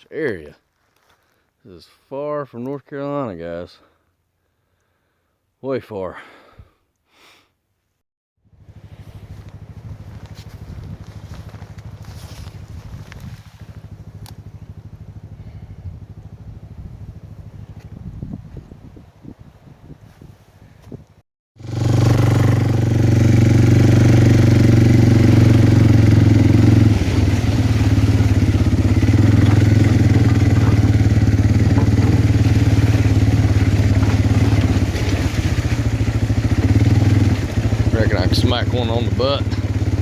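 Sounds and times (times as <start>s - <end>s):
vehicle engine running steadily: 8.4s - 18.8s, 21.6s - 40.0s
faint rustling: 8.9s - 14.2s.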